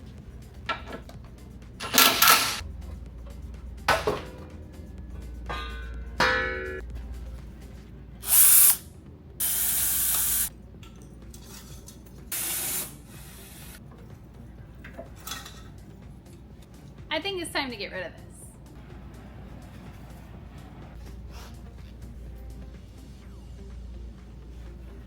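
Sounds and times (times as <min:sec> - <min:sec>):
metal knocks and clanks: 0:00.6 - 0:06.9
power tool hiss bursts: 0:08.2 - 0:08.8, 0:09.4 - 0:10.5, 0:12.3 - 0:13.8.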